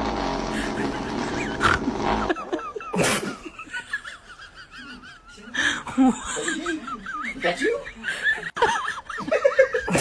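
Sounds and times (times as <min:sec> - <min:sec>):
buzzing fart noise: 0:00.0 - 0:02.6.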